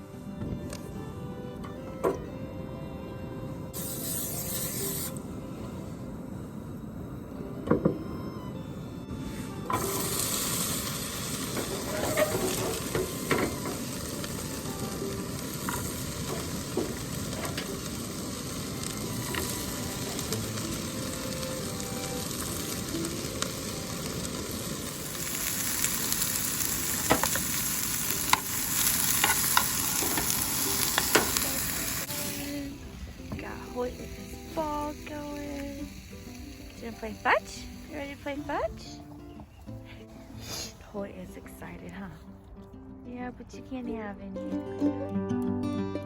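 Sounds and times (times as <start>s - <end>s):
food sizzling in a pan: 3.8s - 5.2s, 9.6s - 39.0s, 40.4s - 40.7s.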